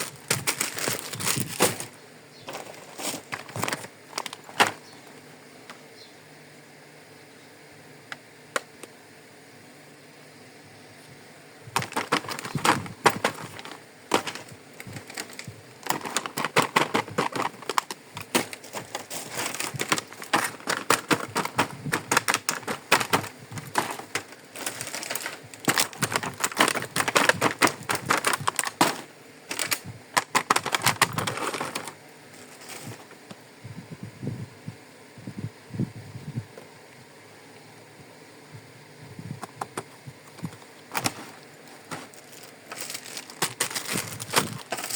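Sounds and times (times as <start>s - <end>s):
plastic clicks and crackles: 0.0s - 1.9s, 2.5s - 5.1s, 11.7s - 33.4s, 39.4s - 44.9s.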